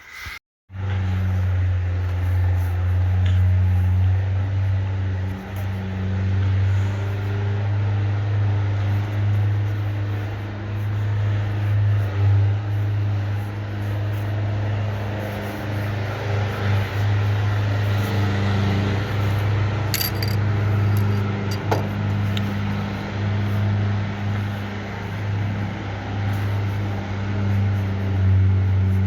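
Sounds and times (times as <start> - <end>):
low motor hum: 0.7 - 29.0.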